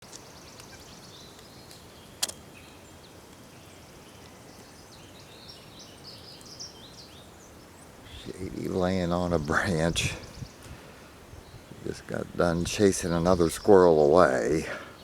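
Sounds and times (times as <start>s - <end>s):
small birds chirping: 0.0s - 15.0s
sharp click: 2.2s - 2.4s.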